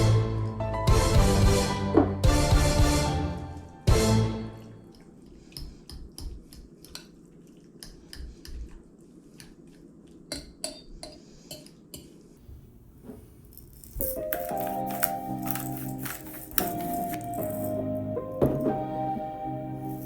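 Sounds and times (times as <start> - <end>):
utensils clinking against dishes: 13.6 - 18.8.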